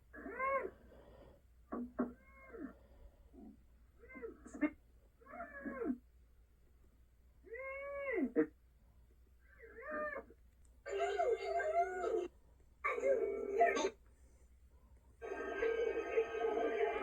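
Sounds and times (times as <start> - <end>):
cartoon mouse muffled whimpering: 10.9 - 14.0.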